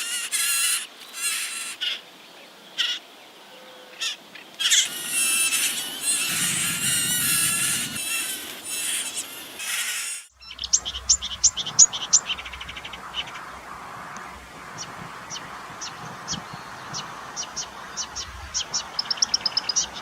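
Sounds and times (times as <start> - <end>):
warbler singing: 10.3 - 20.0.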